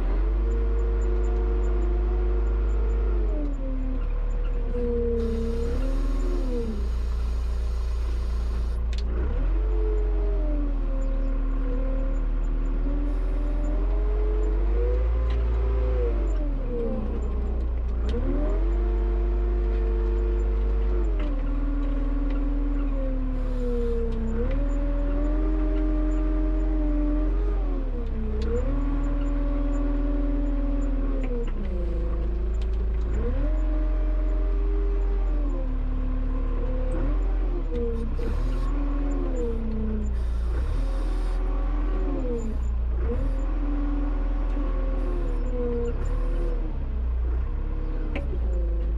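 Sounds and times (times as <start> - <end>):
steady low rumble: 5.2 - 9.1, 37.9 - 43.5
tractor engine revving: 5.2 - 9.6, 37.9 - 48.8.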